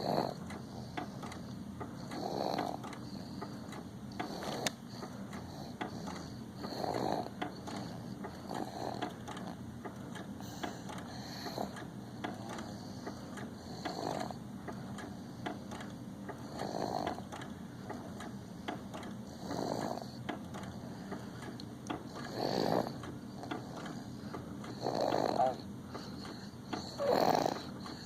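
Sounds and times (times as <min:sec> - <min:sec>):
baby snoring: 0:00.0 - 0:01.1, 0:02.0 - 0:03.3, 0:04.2 - 0:04.8, 0:05.5 - 0:09.6, 0:13.6 - 0:14.4, 0:16.4 - 0:17.2, 0:19.2 - 0:20.2, 0:22.1 - 0:28.0
faint irregular clicks: 0:00.2 - 0:28.0.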